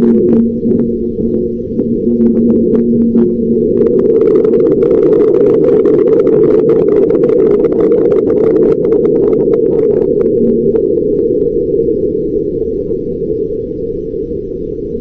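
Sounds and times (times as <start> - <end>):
clicks and crackles: 0.0 - 11.6
steady low rumbling: 0.0 - 15.0.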